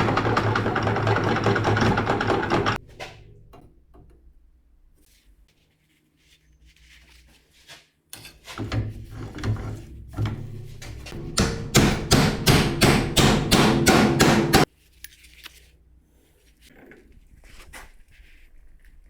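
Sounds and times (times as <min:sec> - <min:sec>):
hammer striking metal: 0:10.1 - 0:14.7.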